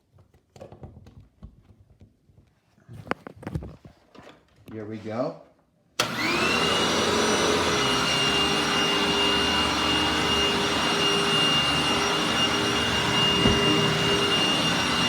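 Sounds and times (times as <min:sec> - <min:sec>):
vacuum motor whine: 0:06.0 - 0:15.0.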